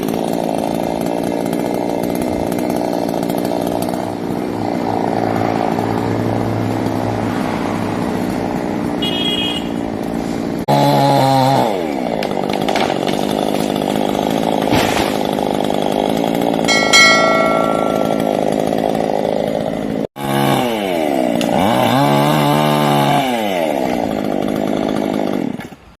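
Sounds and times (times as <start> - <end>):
chainsaw cutting wood: 0.0 - 26.0
short high tone: 16.7 - 18.6.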